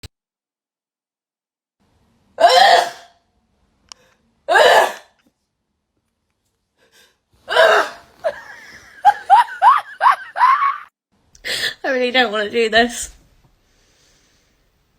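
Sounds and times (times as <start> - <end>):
woman sneezing: 2.4 - 3.1, 4.5 - 5.1.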